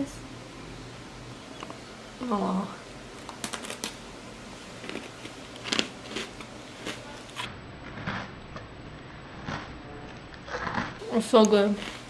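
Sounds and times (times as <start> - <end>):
chewing crunchy cookie: 3.2 - 4.0, 4.8 - 8.3, 9.3 - 9.8, 10.4 - 12.0.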